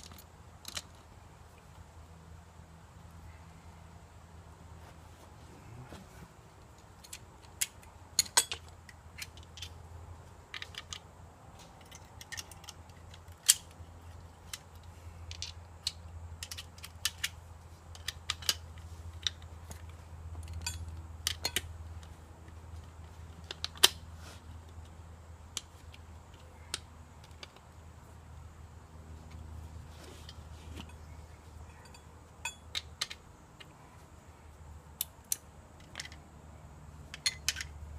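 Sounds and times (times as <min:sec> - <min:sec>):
metal bolts and nuts clinking: 0:00.0 - 0:01.0, 0:06.8 - 0:09.8, 0:10.5 - 0:22.2, 0:30.2 - 0:33.7, 0:37.0 - 0:37.8
steady low hum: 0:00.0 - 0:37.9.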